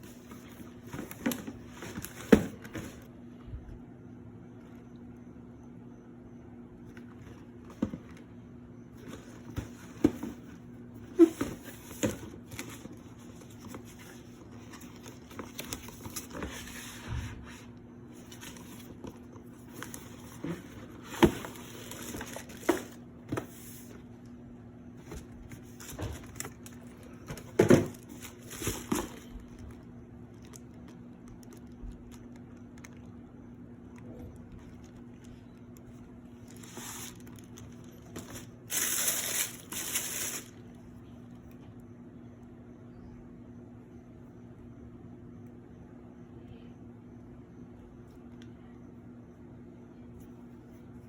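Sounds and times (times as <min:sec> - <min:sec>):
steady low hum: 0:00.0 - 0:51.0
paper rustling and crinkling: 0:11.1 - 0:24.0, 0:25.0 - 0:32.4, 0:36.3 - 0:40.6
box knocks and thuds: 0:27.3 - 0:28.0.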